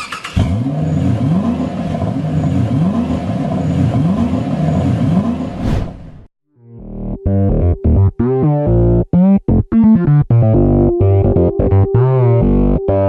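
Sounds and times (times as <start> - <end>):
rising whoosh: 5.4 - 6.3.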